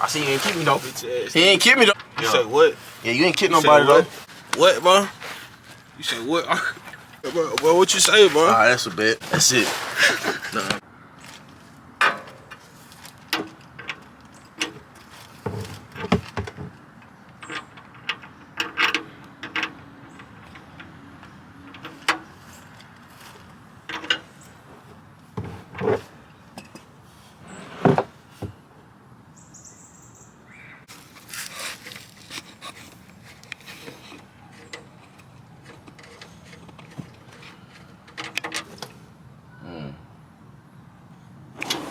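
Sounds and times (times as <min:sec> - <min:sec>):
hand tools clanking on metal: 0:12.0 - 0:22.8, 0:33.6 - 0:39.0.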